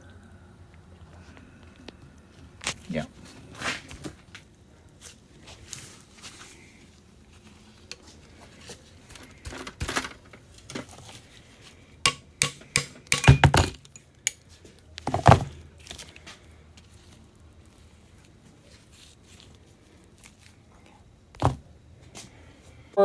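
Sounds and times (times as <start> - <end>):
metal parts clinking and clattering: 12.1 - 14.0.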